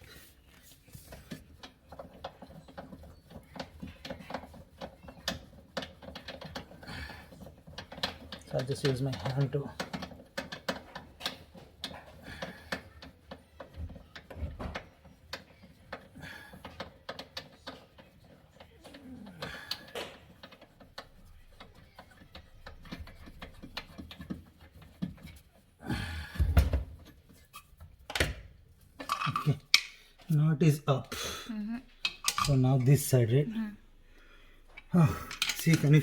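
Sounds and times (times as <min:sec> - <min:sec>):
hands clicking on dishwasher hardware: 0:29.0 - 0:30.3, 0:32.0 - 0:32.7, 0:34.8 - 0:36.0.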